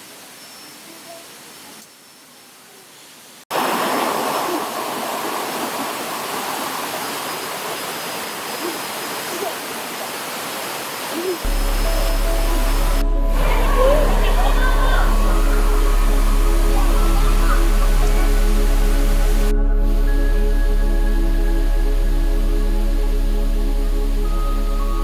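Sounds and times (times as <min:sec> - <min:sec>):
rushing river water: 0:03.3 - 0:25.0
music: 0:11.5 - 0:25.0.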